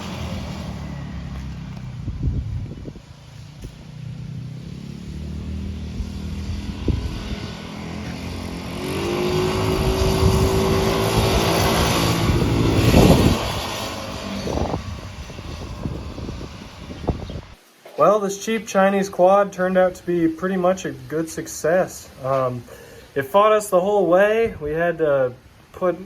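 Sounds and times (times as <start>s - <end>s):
quad engine running: 0.0s - 17.6s.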